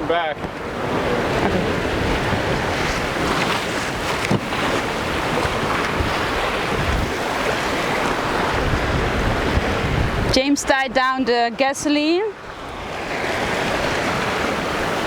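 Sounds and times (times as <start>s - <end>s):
sea water rushing past hull: 0.0s - 15.0s
wind buffeting microphone: 0.0s - 15.0s.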